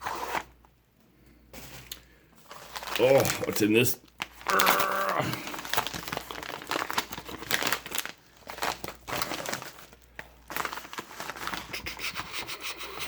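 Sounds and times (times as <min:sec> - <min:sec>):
packaging crinkling and rustling: 0:01.6 - 0:11.8.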